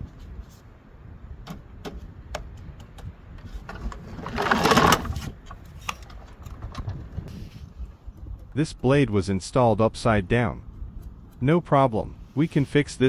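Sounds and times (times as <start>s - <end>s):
push mower clicks and knocks: 1.4s - 7.4s.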